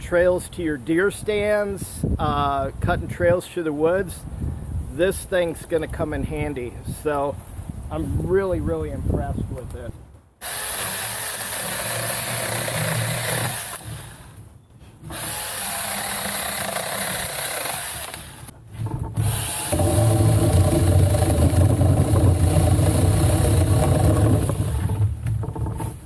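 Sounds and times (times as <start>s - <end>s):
chainsaw cutting wood: 10.4s - 14.4s, 15.0s - 26.0s
cordless chainsaw whining: 10.4s - 14.4s, 15.0s - 18.5s, 19.2s - 25.1s.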